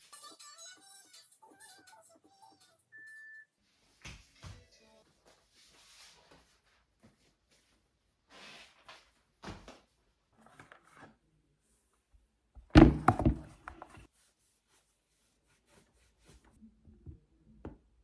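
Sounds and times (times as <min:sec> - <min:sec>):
loud rattling thunk: 0:12.7 - 0:13.7
handling knocks and rustles: 0:12.7 - 0:14.1.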